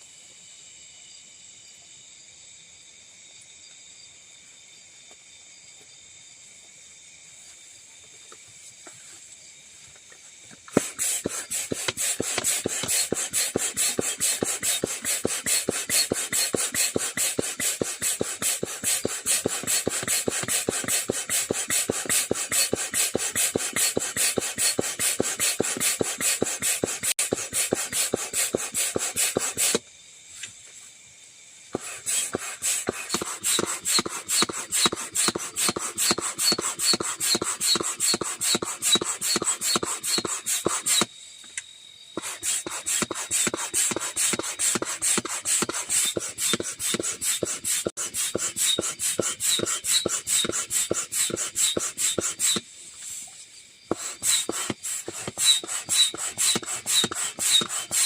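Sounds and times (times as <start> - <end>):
high-pitched insect chorus: 0.0 - 58.0
rasping strokes on wood: 10.7 - 29.8, 31.7 - 41.1, 42.2 - 52.6, 53.9 - 58.0.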